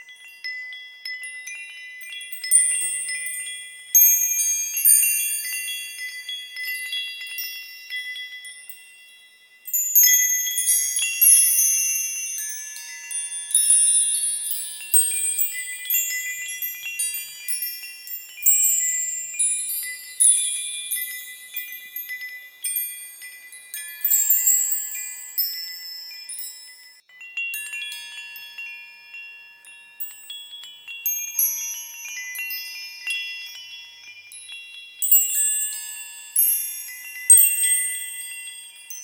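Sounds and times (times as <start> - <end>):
small high-pitched bells chiming: 0.0 - 39.0.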